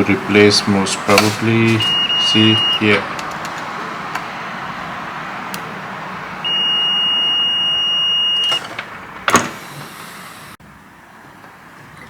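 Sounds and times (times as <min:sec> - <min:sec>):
multimeter continuity beep: 0:01.7 - 0:03.1, 0:06.4 - 0:08.7.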